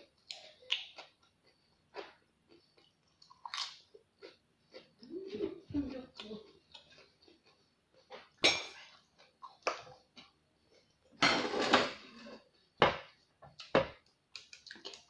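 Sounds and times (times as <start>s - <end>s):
dishes and utensils clinking: 8.4s - 8.9s, 11.2s - 13.0s
dishes clattering: 8.4s - 8.9s, 11.2s - 13.1s.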